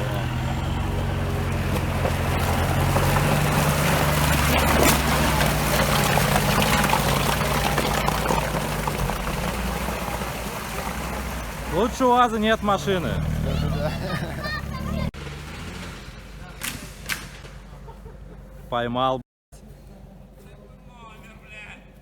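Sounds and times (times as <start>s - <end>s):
mud and water splashing: 0.0s - 15.8s
off-road vehicle engine under load: 0.0s - 18.9s.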